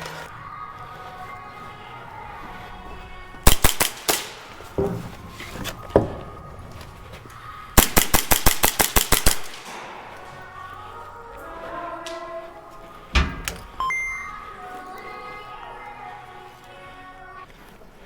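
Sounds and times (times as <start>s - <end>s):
airsoft guns firing: 3.4s - 6.8s, 7.8s - 10.3s.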